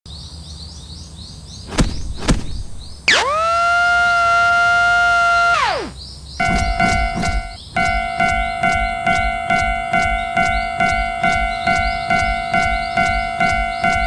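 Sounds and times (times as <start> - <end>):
sharp knocks: 1.7 - 3.1, 6.4 - 14.0
high chirps: 1.7 - 14.0
siren winding up and down: 3.0 - 14.0
steady ringing tones: 5.6 - 14.0.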